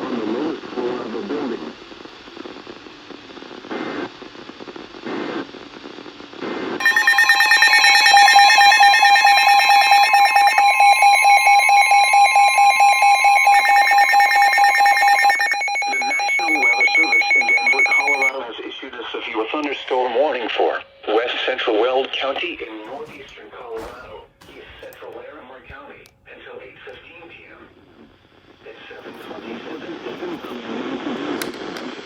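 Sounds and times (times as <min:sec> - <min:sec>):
faint radio audio: 0:00.0 - 0:06.6, 0:15.5 - 0:32.0
pulsing electronic alert tone: 0:06.8 - 0:18.3
person speaking: 0:22.1 - 0:27.6.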